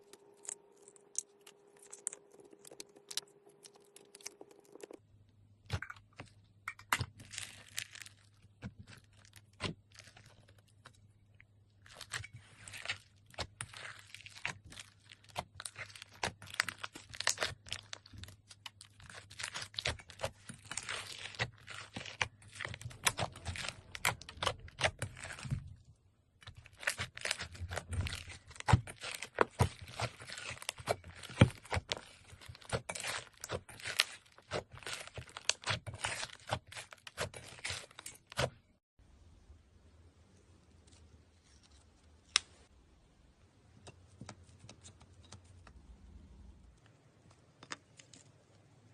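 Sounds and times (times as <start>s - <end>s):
slime squeezed crackling: 26.4s - 37.9s.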